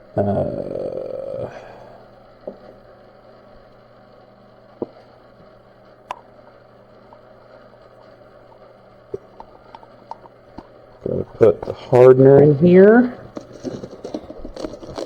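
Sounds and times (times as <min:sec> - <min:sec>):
low electrical hum: 0:00.0 - 0:15.0
small containers clicking: 0:09.2 - 0:12.0, 0:13.1 - 0:15.0.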